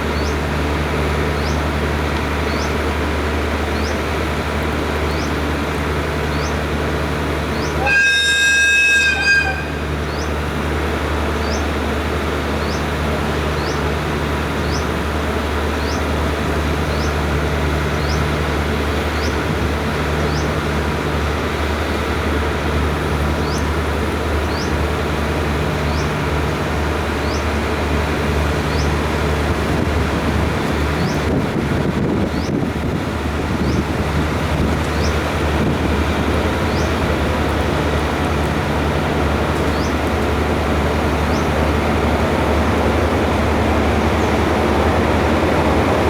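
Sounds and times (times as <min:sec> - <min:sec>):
diesel locomotive engine running: 0:00.0 - 0:46.0
train horn blast: 0:07.6 - 0:11.1.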